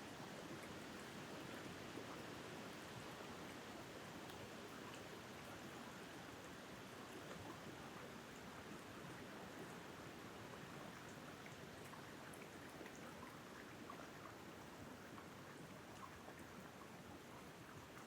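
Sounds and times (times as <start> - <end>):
light ticks: 4.2 - 5.0.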